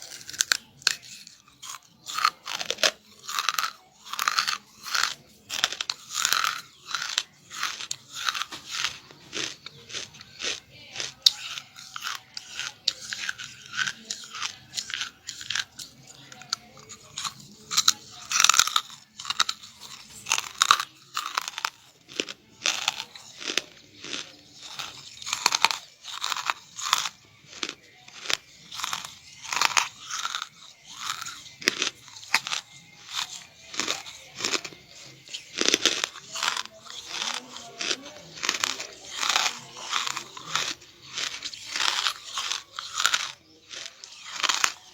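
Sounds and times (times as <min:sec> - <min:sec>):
charcoal being chewed crunching: 0:00.0 - 0:44.9.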